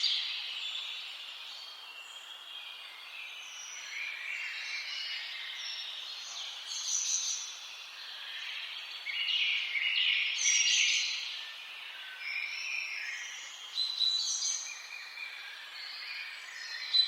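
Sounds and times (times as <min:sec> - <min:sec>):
soft outdoor air hiss: 0:00.0 - 0:17.0
songbirds singing: 0:00.0 - 0:17.0.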